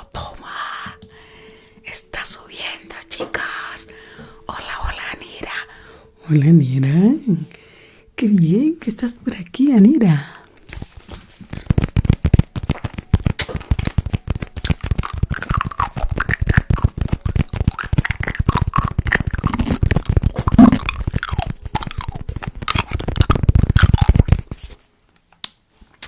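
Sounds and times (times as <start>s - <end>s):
teeth clicking and tapping: 11.5s - 24.6s.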